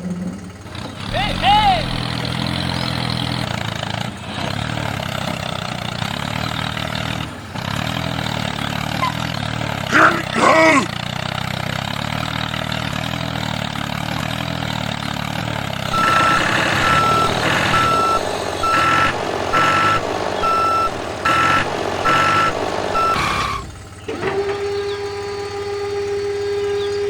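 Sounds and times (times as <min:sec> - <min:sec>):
vehicle engine running: 0:00.0 - 0:27.0
reversing alarm beeping: 0:01.1 - 0:02.3, 0:15.9 - 0:24.0
brief gliding tone: 0:15.9 - 0:23.8.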